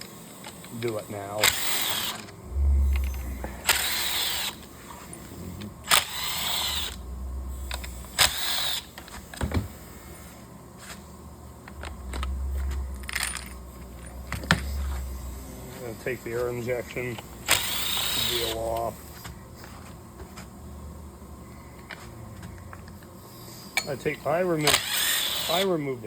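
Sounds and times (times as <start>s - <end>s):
ratchet bursts: 1.3s - 4.6s, 5.9s - 7.0s, 7.6s - 8.9s, 17.4s - 18.8s, 24.6s - 25.7s
low hum: 2.2s - 19.6s.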